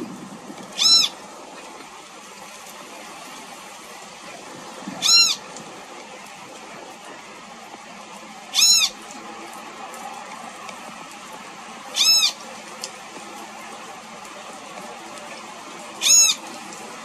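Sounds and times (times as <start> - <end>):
bird giving nasal calls: 0.8 - 1.2, 5.0 - 5.4.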